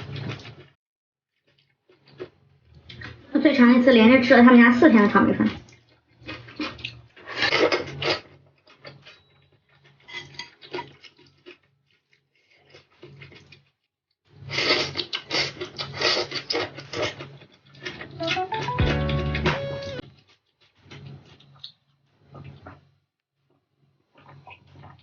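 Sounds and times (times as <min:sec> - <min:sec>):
crackly chewing of noodles: 0:00.0 - 0:00.8, 0:01.4 - 0:03.2, 0:05.5 - 0:13.8, 0:14.4 - 0:19.4, 0:20.0 - 0:22.9, 0:24.0 - 0:25.0.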